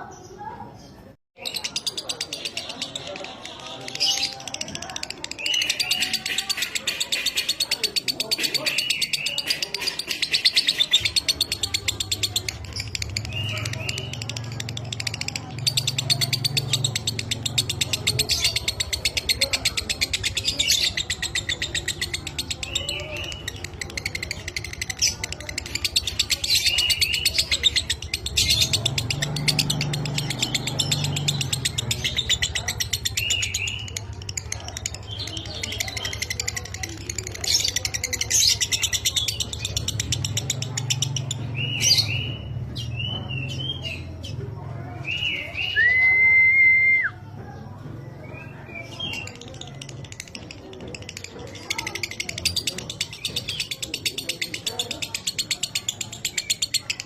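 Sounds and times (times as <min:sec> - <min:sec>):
bird rattling chatter: 0:01.4 - 0:42.0, 0:49.0 - 0:57.0.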